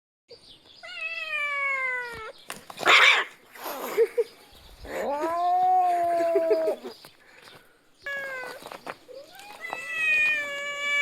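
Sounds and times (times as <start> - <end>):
cat yowling: 0.8 - 3.3, 5.0 - 6.9, 9.3 - 11.0.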